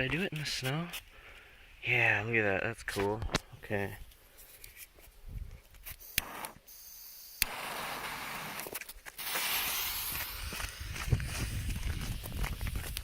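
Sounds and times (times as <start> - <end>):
firecracker fuse hissing: 5.8 - 13.0.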